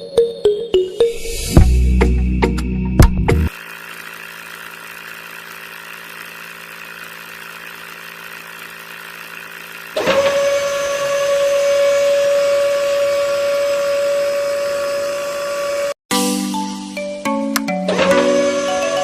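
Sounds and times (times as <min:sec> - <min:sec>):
electric motor humming: 0:03.5 - 0:16.0
high-pitched motor whine: 0:03.5 - 0:16.0.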